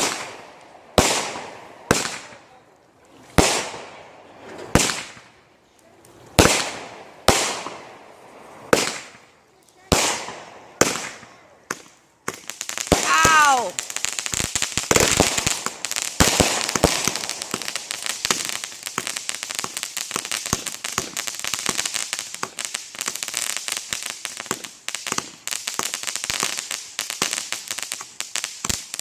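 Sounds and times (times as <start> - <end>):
firework bangs: 0.0 - 2.5, 3.4 - 5.4, 6.3 - 29.0
fireworks crackling: 0.0 - 29.0.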